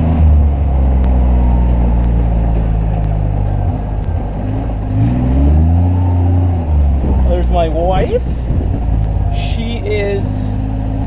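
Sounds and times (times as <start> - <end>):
utility vehicle engine running: 0.0 - 11.0.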